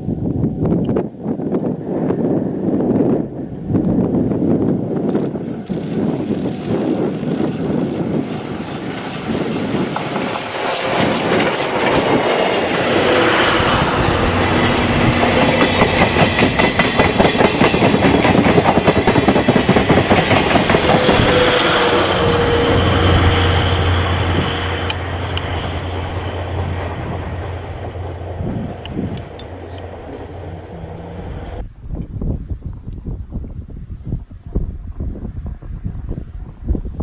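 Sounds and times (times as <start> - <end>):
train wheels clattering over rail joints: 5.1 - 31.6.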